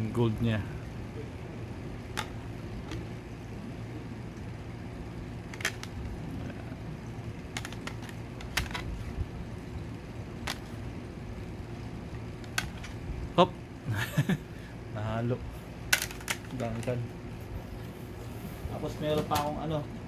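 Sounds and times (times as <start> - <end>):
low background hum: 0.0 - 20.0
plastic card cases clicking: 2.1 - 3.1, 5.5 - 6.2, 7.5 - 9.0, 10.4 - 10.7, 12.4 - 13.0, 15.9 - 16.9.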